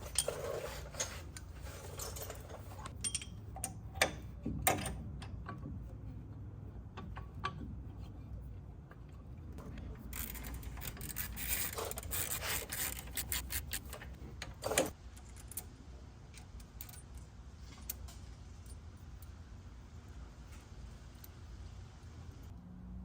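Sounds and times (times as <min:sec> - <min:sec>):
metal parts and tools clinking: 0:00.0 - 0:05.6, 0:10.0 - 0:15.7.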